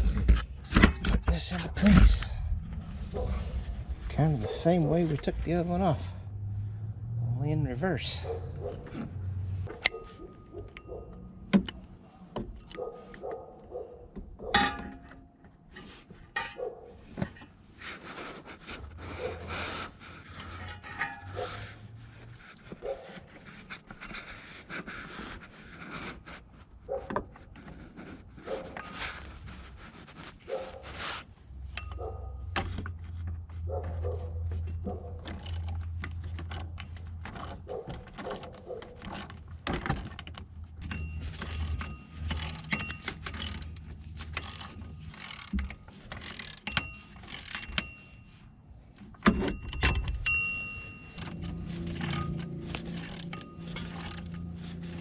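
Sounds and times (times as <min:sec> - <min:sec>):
metal clinks and knocks: 0:09.6 - 0:17.5, 0:18.8 - 0:23.8, 0:31.6 - 0:55.0
scraping and rustling: 0:15.7 - 0:48.6, 0:51.2 - 0:55.0.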